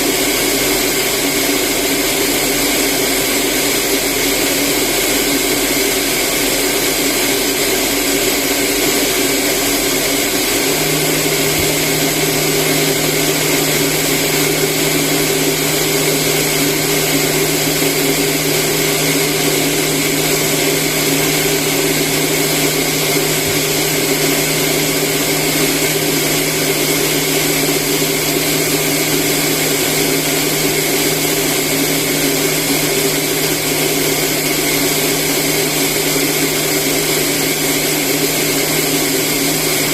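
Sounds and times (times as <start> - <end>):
rice polishing machine running: 0.0 - 39.9
low steady hum: 10.4 - 36.8.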